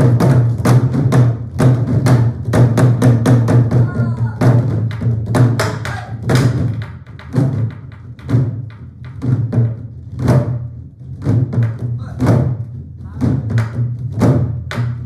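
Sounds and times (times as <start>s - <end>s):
barrel drums beating: 0.0s - 15.0s
clacks on wooden drum shells: 4.6s - 12.5s, 13.4s - 15.0s.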